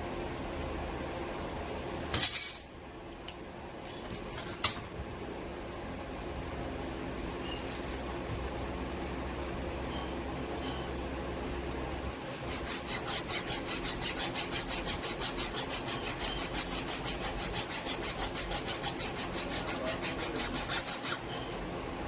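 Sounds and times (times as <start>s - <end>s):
abrasive strokes on wood: 12.2s - 21.5s.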